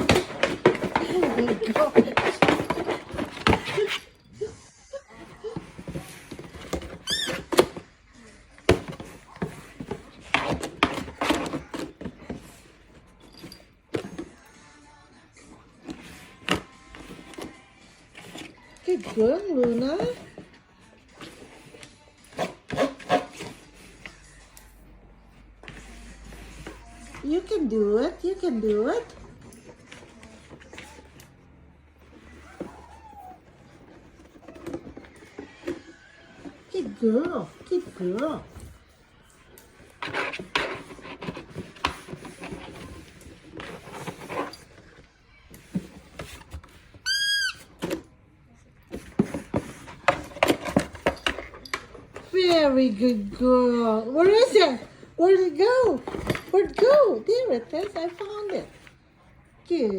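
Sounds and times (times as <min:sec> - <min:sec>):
puppy whimpering: 0:32.3 - 0:33.7.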